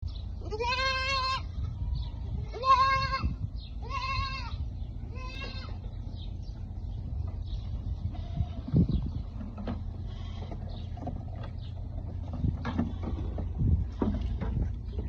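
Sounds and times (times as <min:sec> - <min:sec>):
baby goat bleating: 0:00.4 - 0:05.8, 0:08.0 - 0:09.0.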